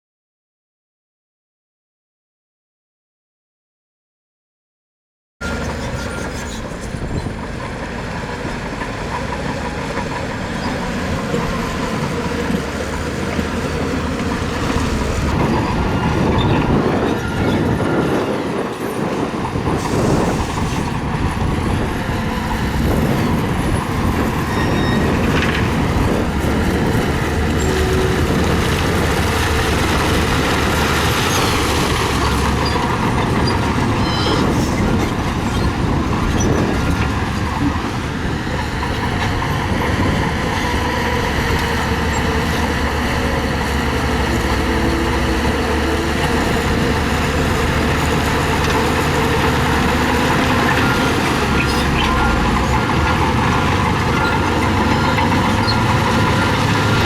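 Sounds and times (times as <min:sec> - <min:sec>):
bulldozer diesel engine running: 0:05.4 - 0:57.0.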